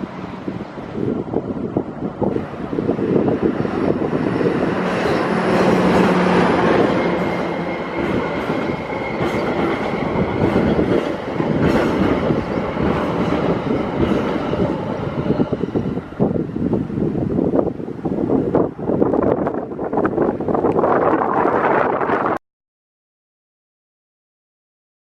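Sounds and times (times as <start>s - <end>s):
train wheels clattering: 4.2s - 15.7s.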